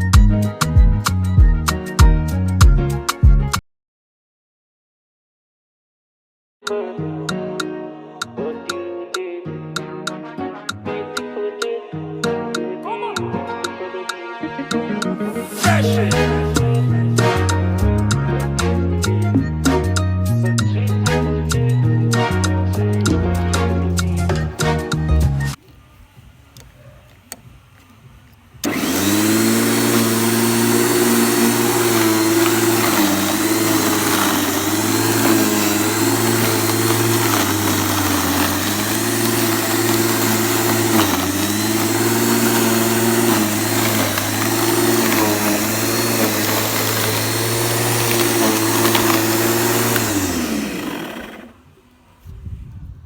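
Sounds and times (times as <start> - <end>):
electric lawn mower motor: 28.6 - 52.0.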